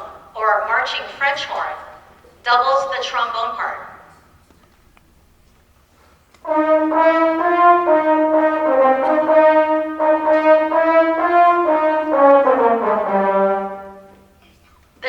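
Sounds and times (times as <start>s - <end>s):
mellophones playing held brass notes: 6.4s - 14.4s.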